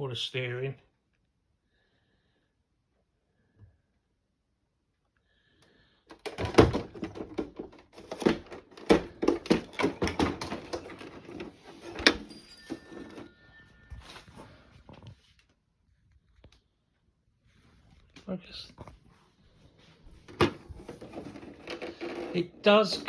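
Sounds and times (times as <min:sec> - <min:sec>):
hard plastic objects knocking: 0:06.1 - 0:12.2, 0:20.2 - 0:23.0.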